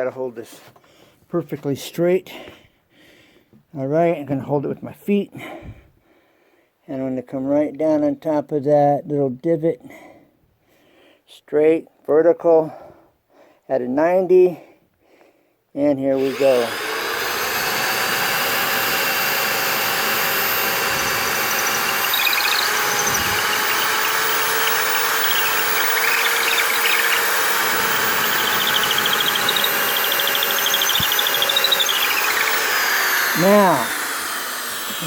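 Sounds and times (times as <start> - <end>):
electric drill boring into wood: 16.2 - 35.0.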